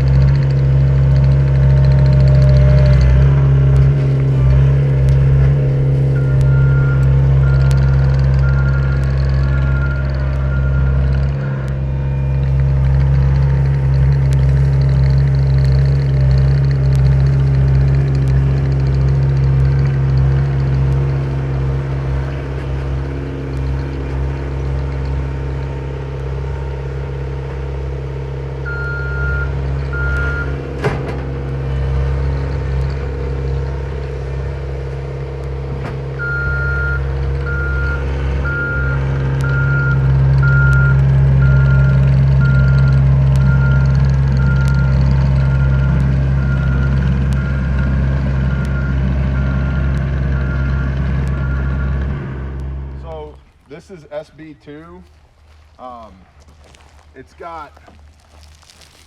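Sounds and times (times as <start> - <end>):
skid steer engine running: 0.0 - 59.0
backup alarm beeping: 2.1 - 13.7, 28.6 - 31.8, 36.2 - 52.2.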